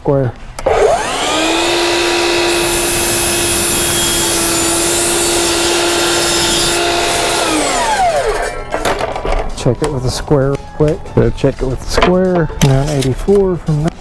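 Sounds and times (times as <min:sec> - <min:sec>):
table saw whining: 0:00.6 - 0:09.2.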